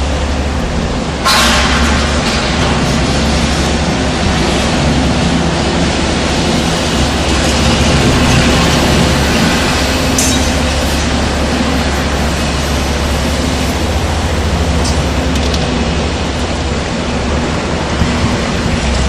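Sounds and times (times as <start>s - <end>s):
diesel engine running under load: 0.0s - 19.0s.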